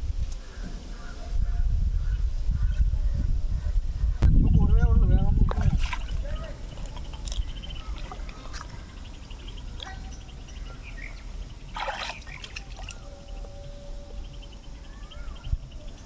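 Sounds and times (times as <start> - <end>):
water splashing and trickling: 5.2 - 15.9
loud water splash: 11.7 - 12.9.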